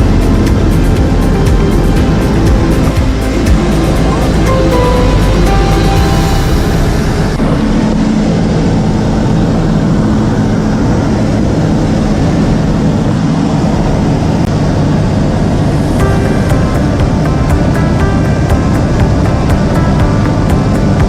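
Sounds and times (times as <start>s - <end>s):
propeller airplane engine drone: 0.0s - 21.0s.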